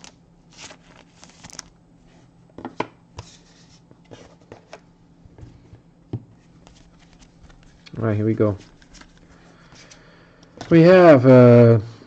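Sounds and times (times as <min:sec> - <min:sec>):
cards rustling and sliding: 0:00.0 - 0:01.7, 0:06.4 - 0:07.9, 0:08.5 - 0:10.8.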